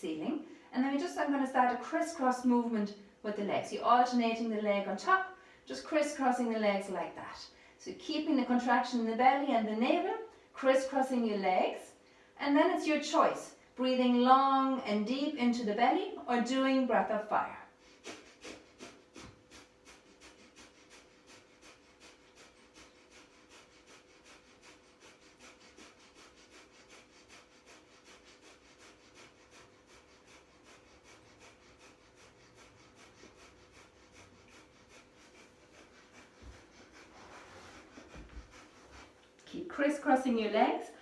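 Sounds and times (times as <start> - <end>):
rapid forceful nasal exhales: 17.7 - 39.3.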